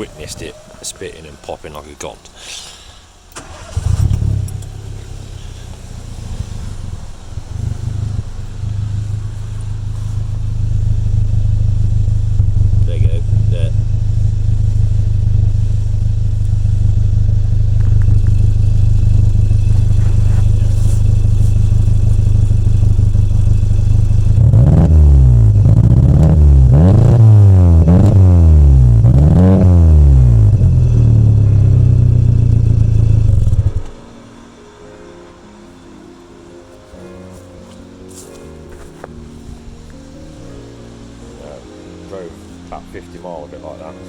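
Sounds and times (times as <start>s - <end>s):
misfiring car engine idling: 0.0s - 34.0s
car engine revving: 0.0s - 34.5s.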